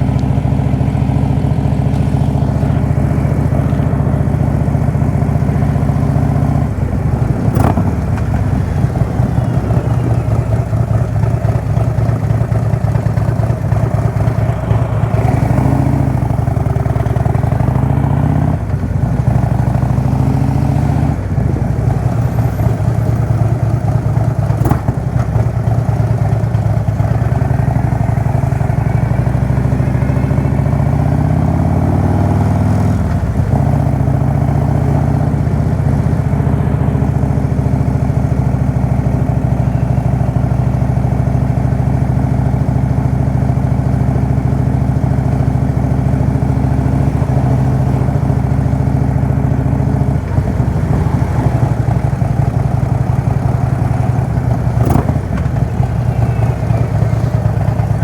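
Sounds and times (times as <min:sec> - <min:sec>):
motorcycle engine shifting gears: 0:00.0 - 0:58.0.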